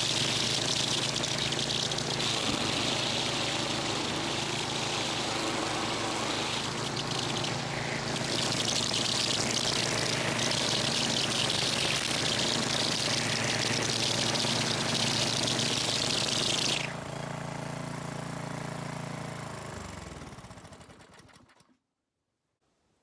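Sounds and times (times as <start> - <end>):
trimmer line whirring: 0.0 - 17.0
trimmer mower engine running: 0.0 - 21.5.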